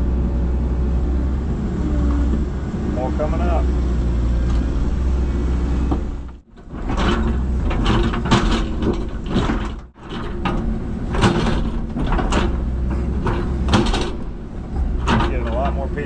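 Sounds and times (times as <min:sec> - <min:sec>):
excavator diesel engine running: 0:00.0 - 0:16.0
demolition debris scraping and clattering: 0:05.9 - 0:16.0.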